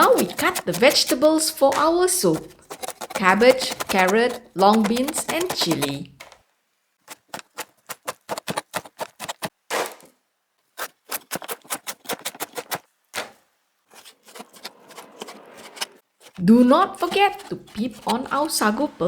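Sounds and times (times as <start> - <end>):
knife chopping on cutting board: 0.0 - 6.4, 7.1 - 10.0, 17.0 - 18.4.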